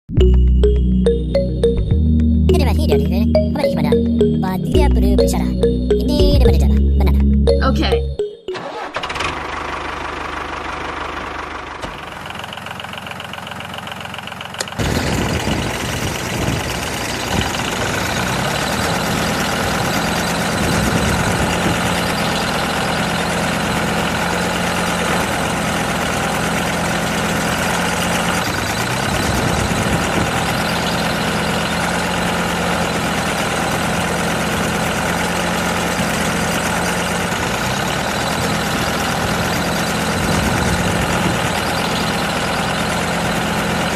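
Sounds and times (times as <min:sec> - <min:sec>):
motor running steadily: 0:09.1 - 0:43.9.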